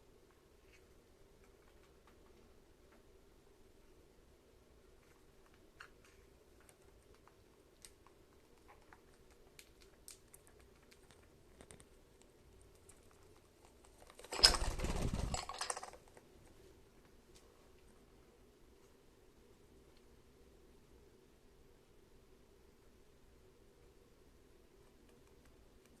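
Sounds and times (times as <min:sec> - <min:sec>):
rapid rustling: 0:08.4 - 0:16.7.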